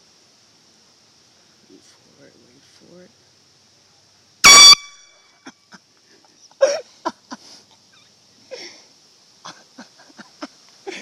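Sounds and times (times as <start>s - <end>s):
high insect drone: 0.0s - 11.0s
air horn blast: 4.4s - 5.1s
stifled wheezing laughter: 5.4s - 11.0s.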